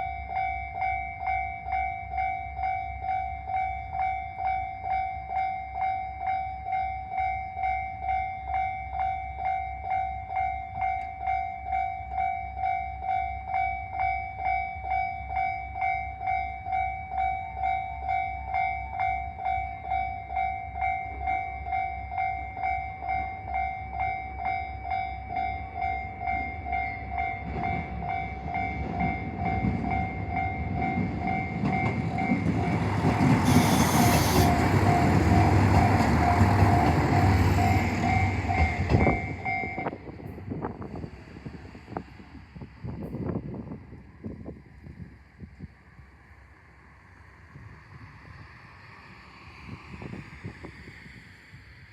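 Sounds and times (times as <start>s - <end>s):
level-crossing two-tone bell: 0.0s - 32.6s, 33.4s - 40.0s
diesel train approaching: 0.0s - 51.9s.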